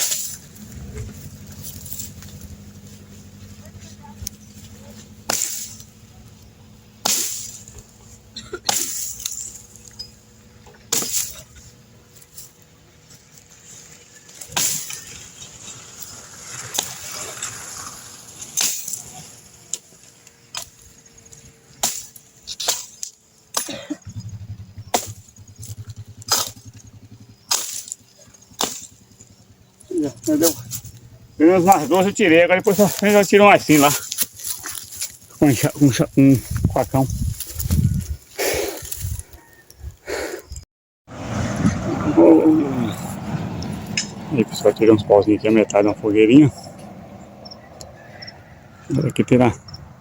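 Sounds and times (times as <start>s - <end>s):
branches rustling: 0.0s - 40.0s
machete chopping wood: 5.2s - 5.9s, 7.0s - 7.7s, 10.9s - 11.4s, 21.8s - 23.8s, 24.9s - 25.3s, 27.5s - 29.0s.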